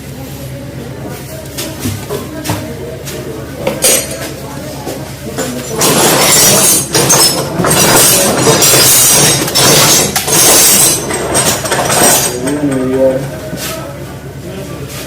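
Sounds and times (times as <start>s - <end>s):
metal tools clattering and scraping: 3.6s - 4.4s, 5.3s - 13.7s.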